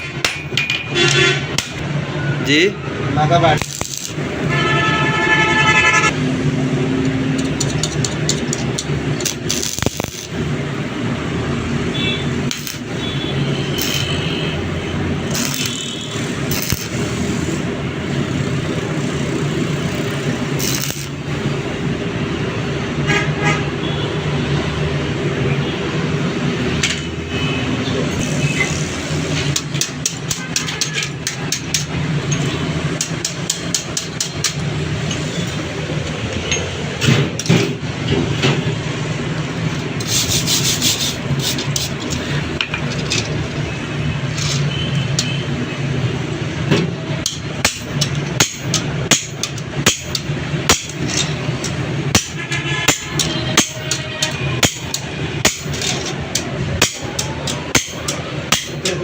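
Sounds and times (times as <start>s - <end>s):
metal tapping and scraping tools: 0.0s - 1.9s, 3.6s - 4.9s, 6.9s - 10.6s, 12.4s - 17.7s, 19.5s - 21.4s, 26.8s - 27.2s, 28.1s - 38.6s, 39.4s - 45.5s, 46.6s - 59.0s
short hissing scrape: 40.0s - 42.0s.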